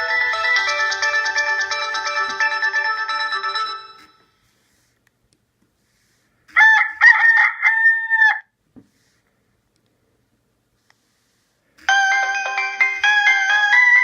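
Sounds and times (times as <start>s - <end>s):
polyphonic ringtone melody: 0.0s - 4.3s, 11.9s - 14.0s
rooster crow ringtone: 6.6s - 8.5s.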